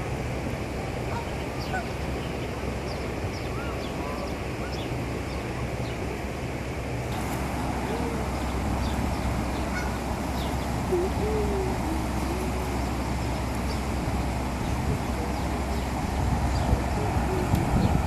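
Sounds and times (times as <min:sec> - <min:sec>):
low outdoor rumble: 0:00.0 - 0:18.0
goose calling: 0:01.1 - 0:01.9, 0:07.7 - 0:14.0.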